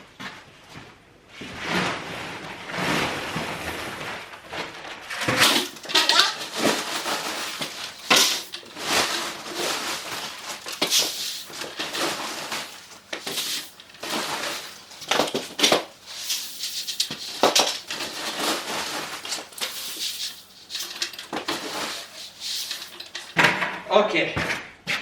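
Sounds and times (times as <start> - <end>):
feed pellets rattling: 5.2 - 23.5.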